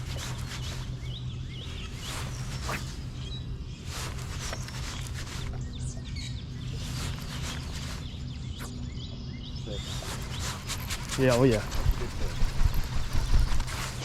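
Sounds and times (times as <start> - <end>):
small birds chirping: 0.0 - 14.0
steady low hum: 0.0 - 14.0.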